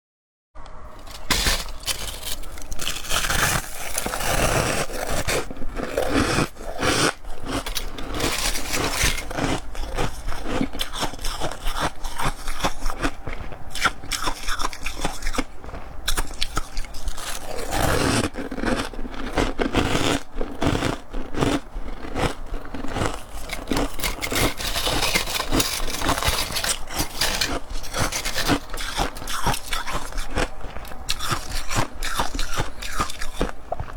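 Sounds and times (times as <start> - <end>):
ice being chewed: 0.9 - 33.9.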